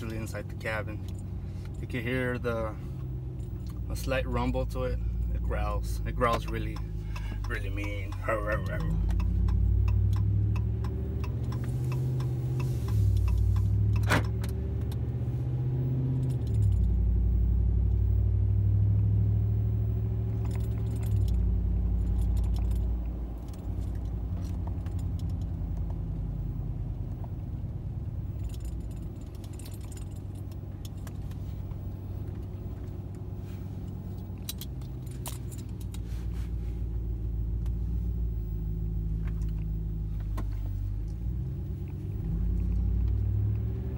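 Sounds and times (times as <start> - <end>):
truck exhaust rumble: 0.0 - 43.9
light clicking rattles: 5.6 - 15.0, 20.4 - 26.0, 28.3 - 36.1.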